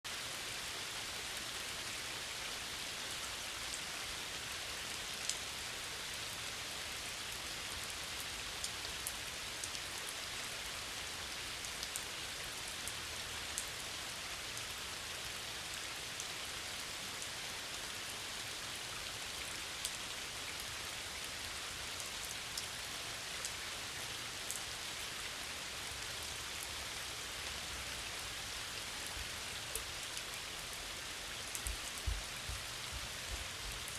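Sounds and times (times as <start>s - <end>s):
rain falling on water: 0.1s - 33.9s.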